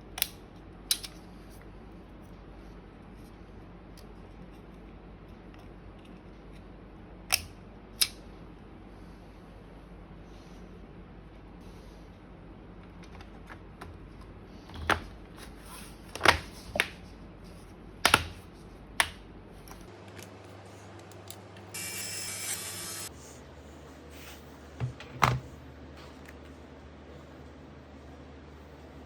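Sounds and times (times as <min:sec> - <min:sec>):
plastic clicks and snaps: 0:00.2 - 0:01.2
whirring noise: 0:21.6 - 0:23.1.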